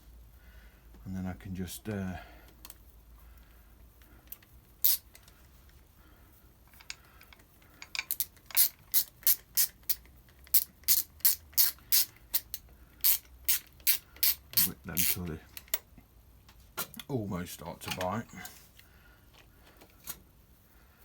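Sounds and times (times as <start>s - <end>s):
socket ratchet clicking: 4.8s - 5.3s, 7.8s - 15.9s.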